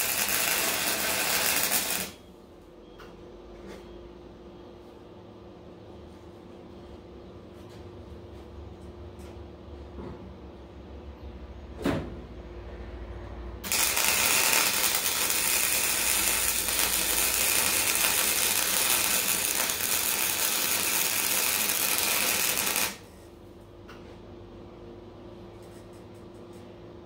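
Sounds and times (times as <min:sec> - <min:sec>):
arc welder crackling sizzle: 0:00.0 - 0:02.2, 0:13.6 - 0:23.2.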